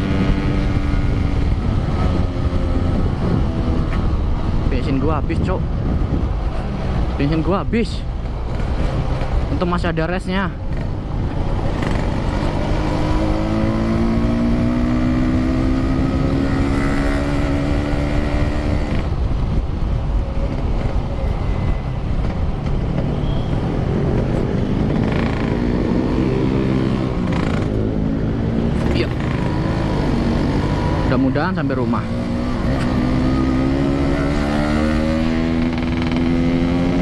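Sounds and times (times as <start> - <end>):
motorcycle engine accelerating: 0.0 - 4.6, 10.6 - 19.2, 23.9 - 37.0
road and wind rumble: 0.0 - 37.0.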